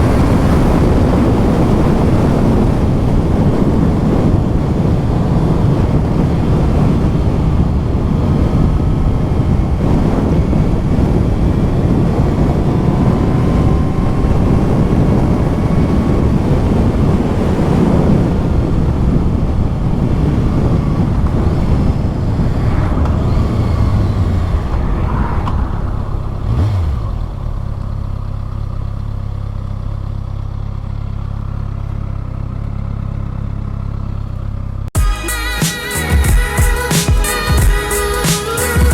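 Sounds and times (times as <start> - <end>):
wind noise: 0.0 - 29.5
motorcycle engine revving: 0.0 - 34.9.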